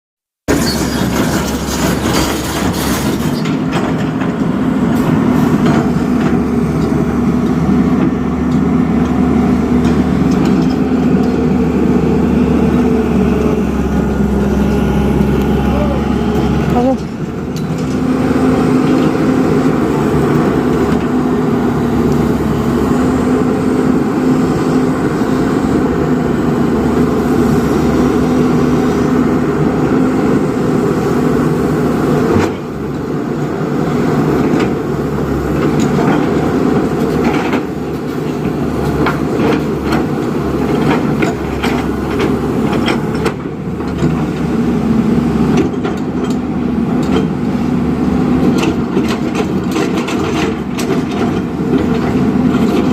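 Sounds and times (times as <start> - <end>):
knocks and clatter: 0.5 - 4.6, 48.4 - 52.9
diesel engine running under load: 0.6 - 52.9.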